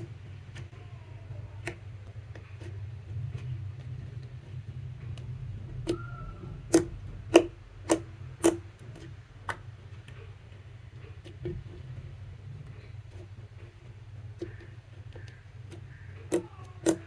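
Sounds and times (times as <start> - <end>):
low steady hum: 0.0 - 17.0
sharp clicks and pops: 5.1 - 10.3.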